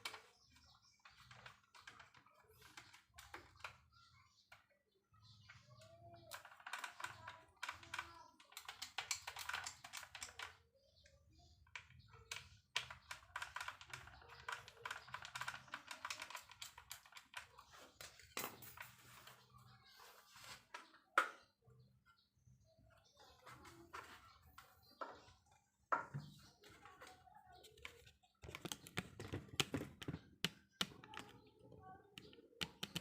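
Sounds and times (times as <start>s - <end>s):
faint voice: 0.0s - 33.0s
small hard parts clicking: 6.1s - 10.6s, 11.7s - 19.3s, 27.8s - 33.0s.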